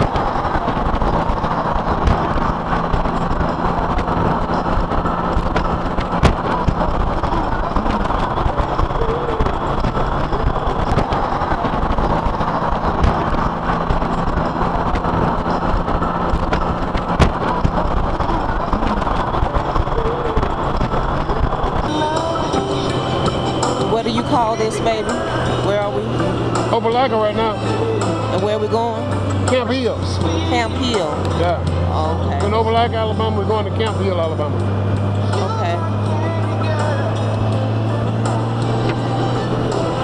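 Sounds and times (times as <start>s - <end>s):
wind buffeting knocks: 0.0s - 29.6s
wind rushing over microphone: 0.0s - 32.3s
motorcycle engine rumble: 0.0s - 40.0s
road noise: 0.0s - 40.0s.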